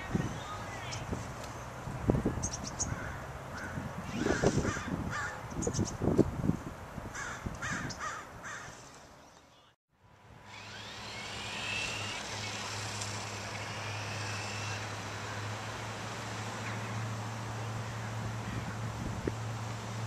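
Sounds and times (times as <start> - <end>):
birds calling: 0.0 - 6.1, 7.2 - 9.7, 10.5 - 15.9.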